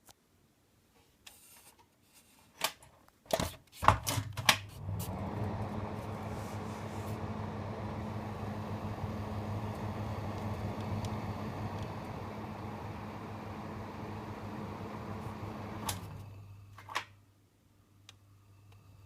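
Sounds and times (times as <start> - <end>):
fan motor humming: 4.8 - 16.6.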